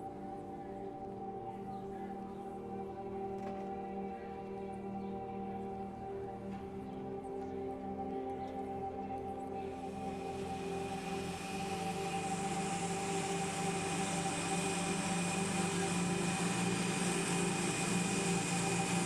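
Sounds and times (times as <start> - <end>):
jet engines whining: 9.8 - 19.0.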